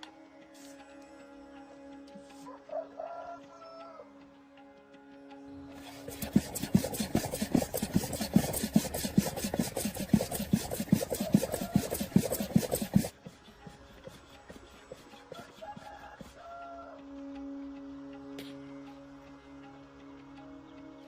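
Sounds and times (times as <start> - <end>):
rapid rubbing strokes: 5.7 - 16.8.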